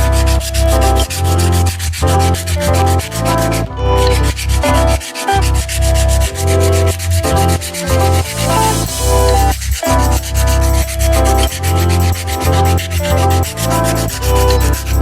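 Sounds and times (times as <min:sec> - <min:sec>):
sanding on metal: 0:00.0 - 0:03.6, 0:04.4 - 0:15.0
electronic music with bass beat: 0:00.0 - 0:15.0.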